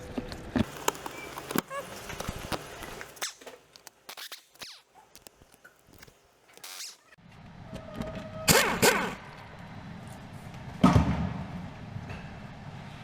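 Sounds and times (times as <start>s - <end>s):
plastic panel scraping: 0.6s - 7.2s.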